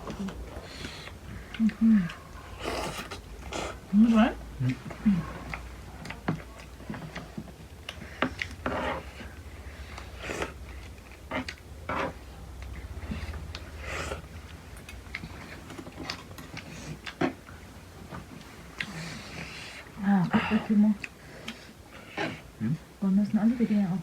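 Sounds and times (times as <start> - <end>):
steady low hum: 0.0 - 24.0
chewing and mouth smacking: 12.6 - 19.7.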